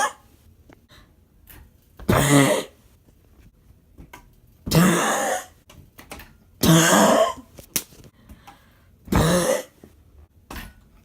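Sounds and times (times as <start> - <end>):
person making throaty grunts: 4.7 - 5.6, 6.6 - 7.4, 9.1 - 9.8.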